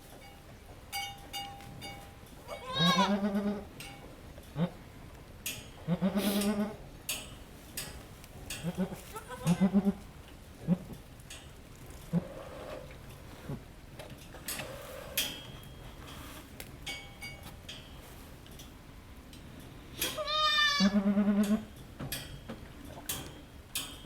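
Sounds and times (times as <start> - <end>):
goat bleating: 2.5 - 3.6, 8.6 - 10.0, 20.0 - 21.4.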